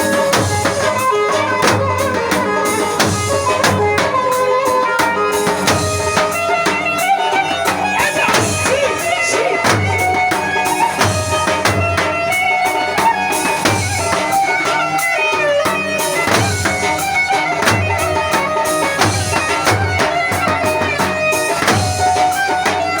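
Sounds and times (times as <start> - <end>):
reedy wind melody: 0.0 - 23.0
steady drum beat: 0.0 - 23.0.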